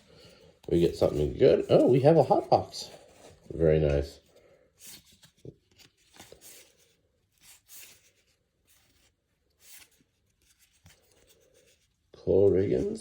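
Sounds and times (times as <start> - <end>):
cards sliding against each other: 4.8 - 11.9.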